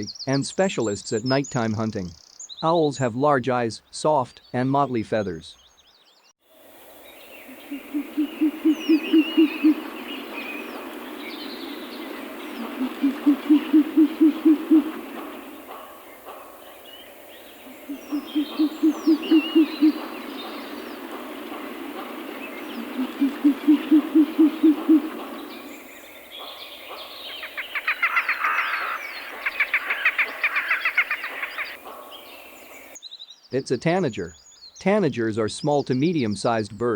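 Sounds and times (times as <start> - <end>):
small birds chirping: 0.0 - 36.9
owl hooting: 7.0 - 33.0
bird chattering call: 7.3 - 33.0.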